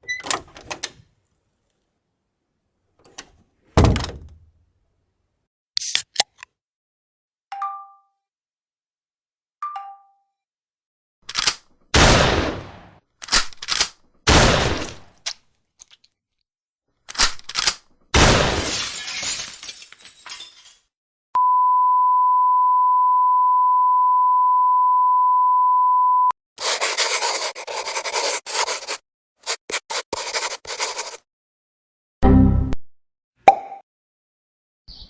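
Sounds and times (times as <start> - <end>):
harsh scratchy noise: 26.6 - 31.2.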